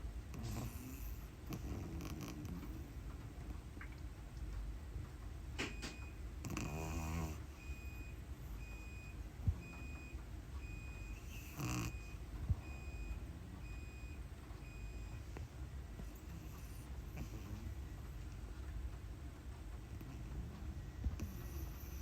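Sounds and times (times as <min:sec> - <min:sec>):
dog snorting: 0:00.3 - 0:02.8, 0:06.4 - 0:07.8, 0:11.0 - 0:12.2, 0:16.0 - 0:17.8, 0:21.2 - 0:22.0
puppy snoring: 0:00.3 - 0:03.0, 0:06.4 - 0:15.4, 0:16.0 - 0:18.0, 0:21.0 - 0:22.0.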